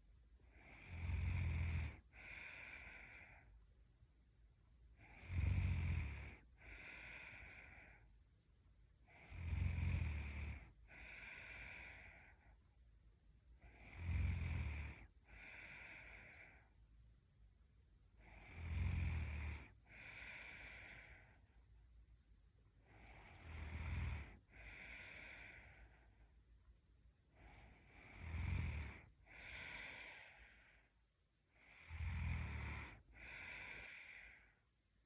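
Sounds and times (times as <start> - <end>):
woman snoring: 0.5 - 3.5, 5.0 - 8.0, 9.0 - 12.5, 13.6 - 16.7, 18.2 - 21.5, 22.8 - 26.2, 27.3 - 30.9, 31.5 - 34.6.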